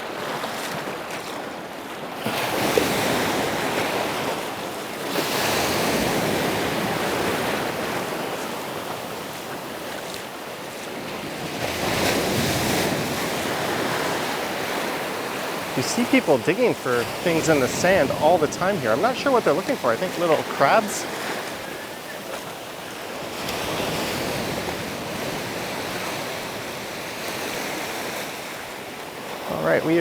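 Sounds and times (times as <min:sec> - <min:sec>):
surf breaking on sand: 0:02.2 - 0:30.0.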